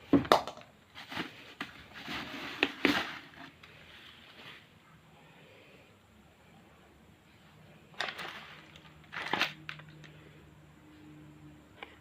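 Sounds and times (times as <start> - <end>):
rustling: 0.9 - 4.8, 7.9 - 10.0.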